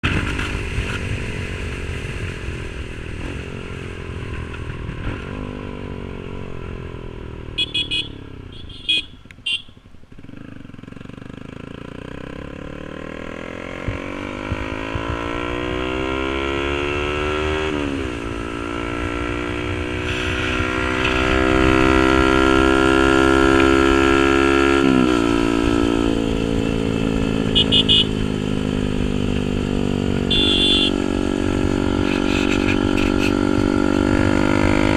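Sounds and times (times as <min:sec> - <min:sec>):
motorcycle engine accelerating: 0:00.0 - 0:34.9
short horn beeps: 0:07.6 - 0:09.8, 0:27.6 - 0:28.2, 0:30.2 - 0:31.0.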